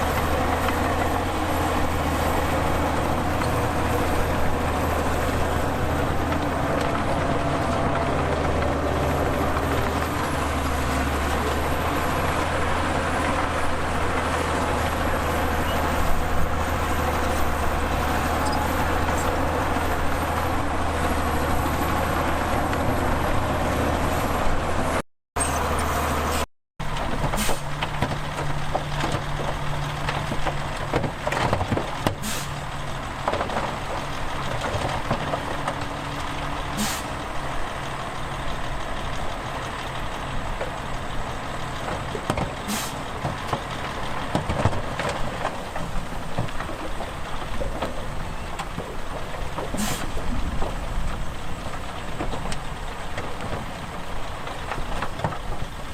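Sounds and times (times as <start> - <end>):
diesel engine humming: 0.0 - 55.9.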